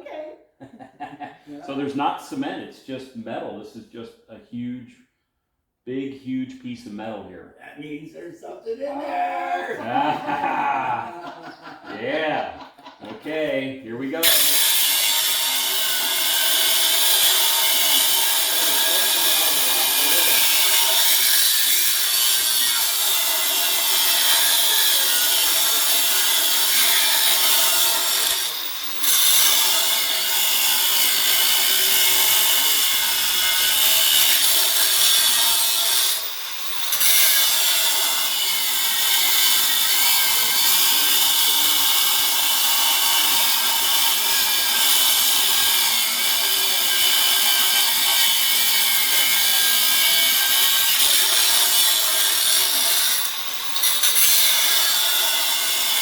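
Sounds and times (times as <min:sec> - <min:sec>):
power grinder cutting steel: 0:13.3 - 0:56.0.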